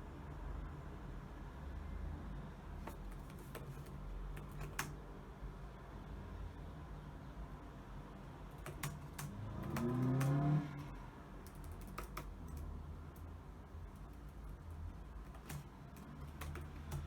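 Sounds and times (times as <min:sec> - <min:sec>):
keyboard typing: 0:02.8 - 0:05.0, 0:08.5 - 0:17.0.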